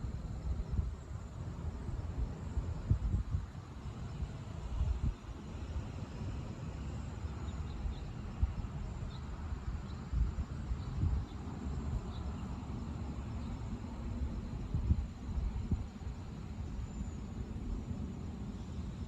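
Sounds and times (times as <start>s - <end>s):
wind buffeting microphone: 0.0s - 19.0s
faint high wildlife chirps: 6.8s - 19.0s.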